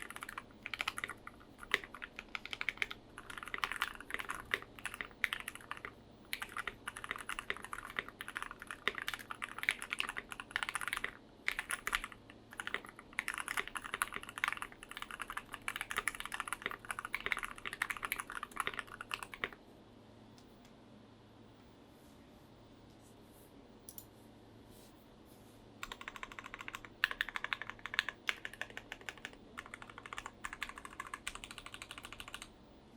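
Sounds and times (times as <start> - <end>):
fast mechanical keyboard typing: 0.0 - 19.6, 25.8 - 32.5.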